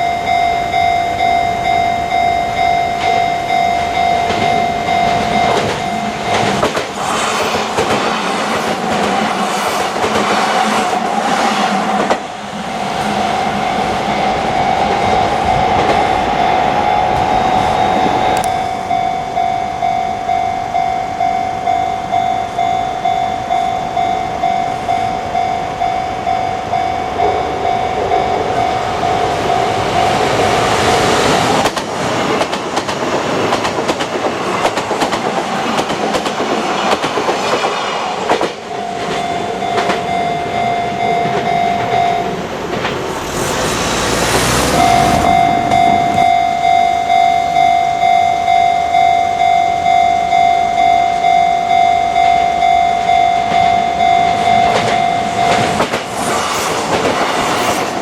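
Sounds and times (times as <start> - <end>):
level crossing alarm dinging: 0.0 - 7.0, 12.2 - 30.6, 38.7 - 42.6, 43.2 - 56.0
train wheels clattering: 4.0 - 12.4, 30.3 - 46.4, 54.4 - 58.0
loud rushing burst: 42.4 - 46.6.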